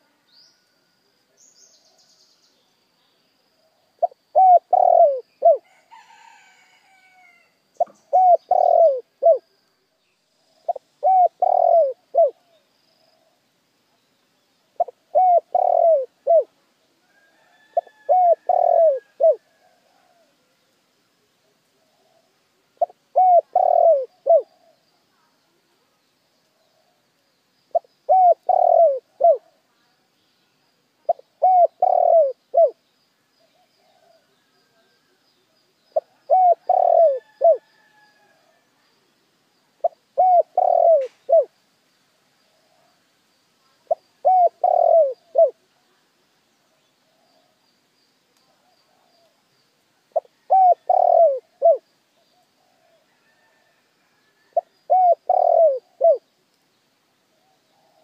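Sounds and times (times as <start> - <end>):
dove cooing: 4.0 - 5.6, 7.8 - 9.5, 10.6 - 12.6, 14.8 - 16.5, 17.8 - 20.3, 21.9 - 24.8, 27.7 - 29.5, 31.1 - 32.8, 36.0 - 37.7, 39.8 - 41.5, 43.9 - 45.7, 50.1 - 53.6, 54.5 - 56.3.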